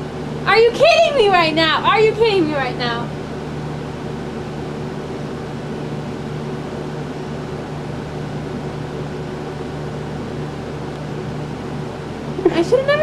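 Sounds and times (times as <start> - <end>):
electric fans whirring: 0.0 - 13.0
low motor hum: 0.0 - 13.0.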